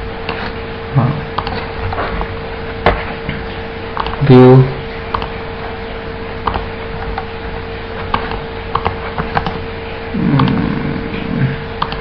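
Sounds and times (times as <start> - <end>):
constant hum: 0.0 - 12.0
computer mouse clicks: 1.4 - 1.6, 4.0 - 4.2, 5.1 - 5.3, 6.5 - 7.3, 8.1 - 9.6, 11.8 - 12.0.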